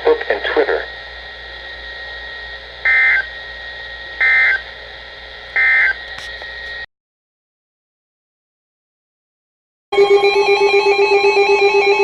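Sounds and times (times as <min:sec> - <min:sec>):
radio hiss: 0:00.0 - 0:06.9.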